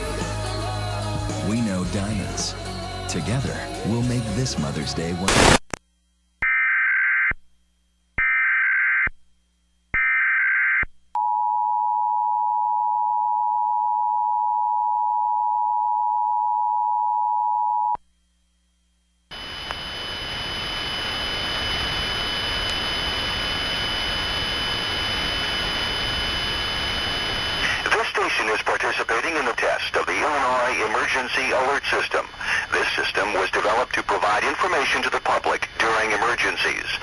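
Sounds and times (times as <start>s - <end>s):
faint high whining tones: 11.2s - 27.9s.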